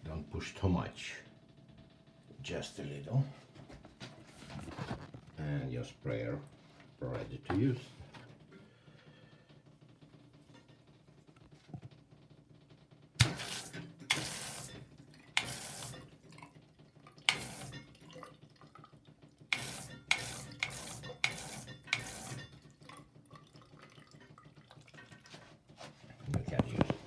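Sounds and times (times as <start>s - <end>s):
water sprayer bursts: 13.2s - 16.0s, 17.3s - 17.8s, 19.5s - 22.4s.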